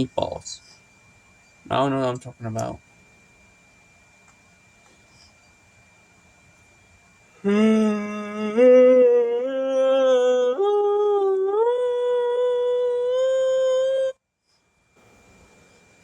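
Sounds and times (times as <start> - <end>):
person humming a tune: 7.4 - 14.2.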